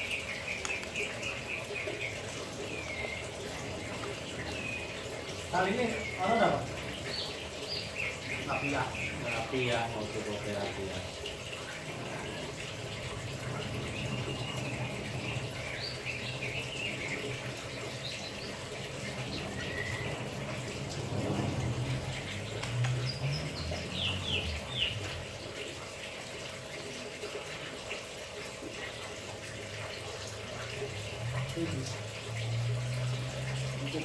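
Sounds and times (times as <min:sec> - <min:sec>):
running water hiss: 0:00.0 - 0:34.0
bird chirping: 0:13.8 - 0:20.8.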